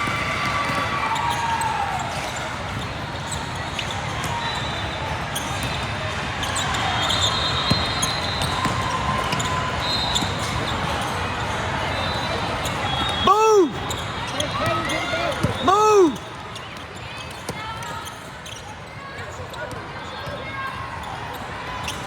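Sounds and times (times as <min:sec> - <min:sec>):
crowd noise: 0:00.0 - 0:22.0
sneaker squeaks: 0:02.1 - 0:22.0.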